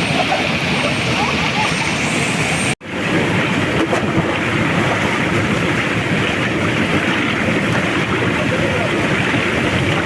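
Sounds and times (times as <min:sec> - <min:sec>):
waterfall pouring: 0:00.0 - 0:10.0.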